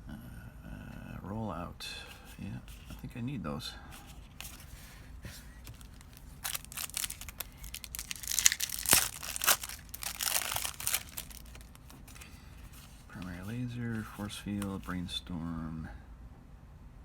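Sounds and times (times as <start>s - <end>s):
plastic wrapper crinkling and tearing: 5.6s - 13.3s.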